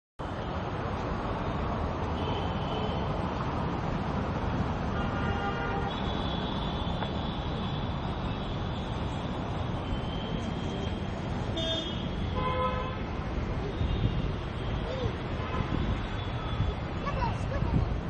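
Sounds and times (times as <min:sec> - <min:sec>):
street traffic noise: 0:00.2 - 0:18.0
vehicle horns: 0:04.9 - 0:13.1, 0:13.7 - 0:16.7.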